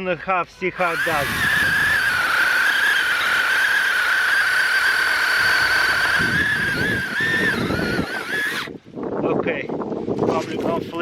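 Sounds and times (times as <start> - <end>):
chainsaw whining cutting wood: 0.7 - 8.8.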